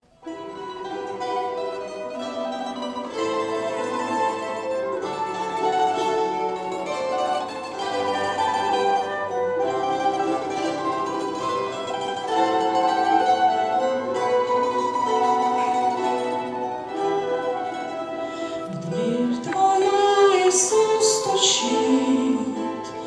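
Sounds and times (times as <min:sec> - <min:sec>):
plucked string instruments melody: 0:00.0 - 0:23.0.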